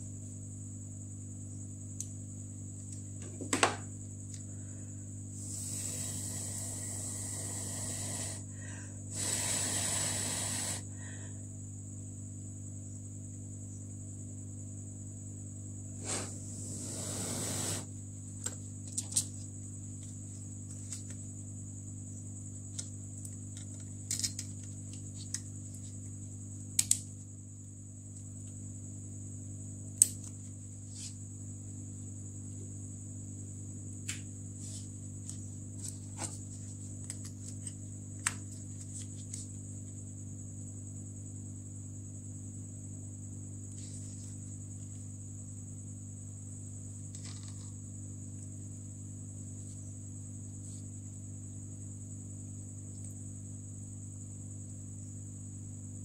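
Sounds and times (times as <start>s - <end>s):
steady hum with high whine: 0.0s - 56.0s
air hiss bursts: 5.4s - 8.5s, 9.1s - 10.9s, 16.0s - 17.9s.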